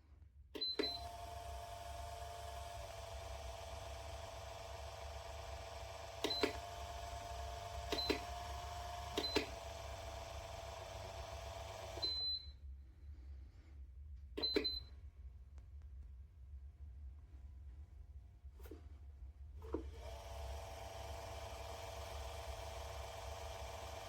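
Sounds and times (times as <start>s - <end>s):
fan motor hum: 0.9s - 12.1s, 19.8s - 24.0s.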